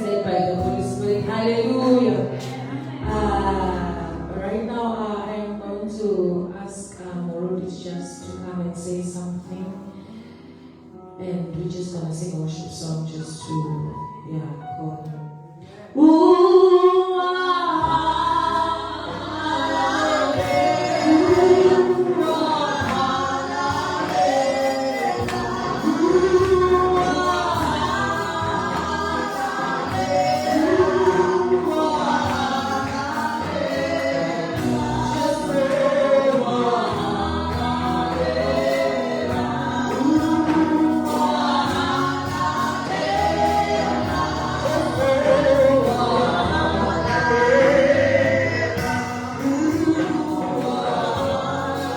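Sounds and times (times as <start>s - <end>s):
choir singing gospel song: 0.0s - 4.7s, 16.4s - 51.9s
low bass accompaniment: 0.0s - 7.1s, 17.8s - 51.9s.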